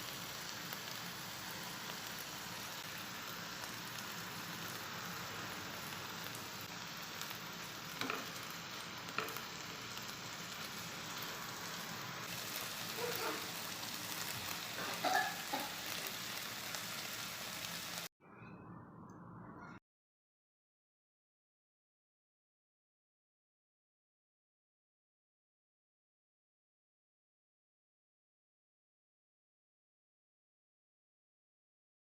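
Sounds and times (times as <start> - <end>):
food sizzling in hot oil: 0.0 - 18.1.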